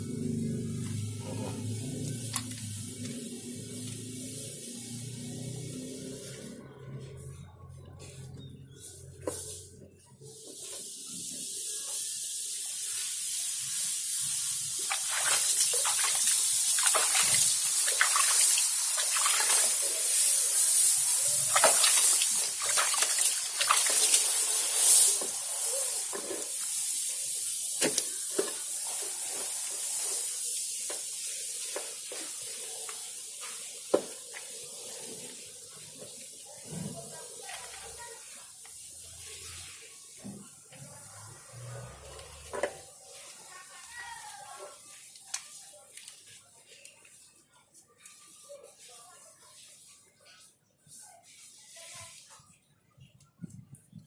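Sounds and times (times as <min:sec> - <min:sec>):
water spraying: 0:00.0 - 0:52.6
splashes and clicks: 0:14.8 - 0:25.4.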